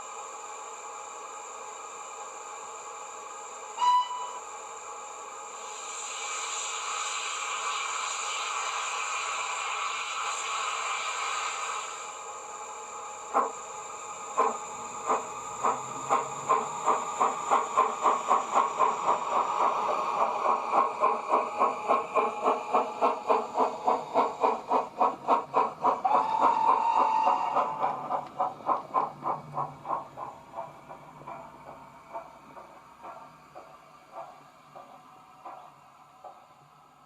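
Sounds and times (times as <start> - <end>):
steam hiss: 0.0 - 37.0
steam locomotive exhaust chuffs: 0.0 - 37.0
brief steady tone: 3.8 - 4.5.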